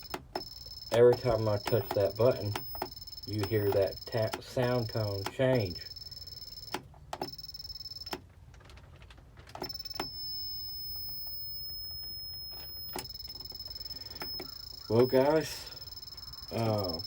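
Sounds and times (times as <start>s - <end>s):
button clicks: 0.0s - 5.7s.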